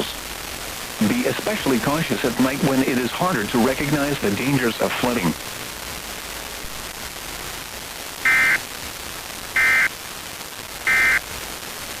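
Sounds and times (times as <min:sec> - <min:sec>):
static hiss: 0:00.0 - 0:12.0
short raspy digital buzzes: 0:08.2 - 0:08.6, 0:09.6 - 0:09.9, 0:10.9 - 0:11.2.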